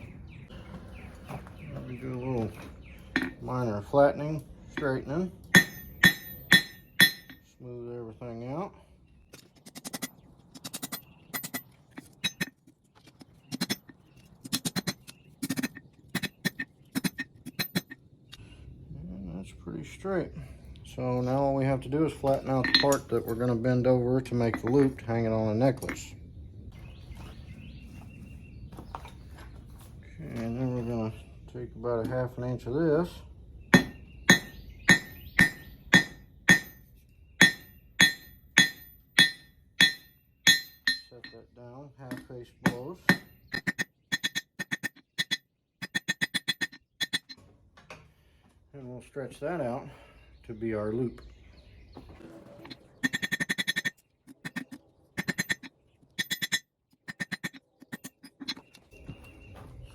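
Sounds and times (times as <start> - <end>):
hammer striking steel on anvil: 5.5 - 7.4, 22.6 - 23.0, 33.8 - 41.4, 42.1 - 47.4.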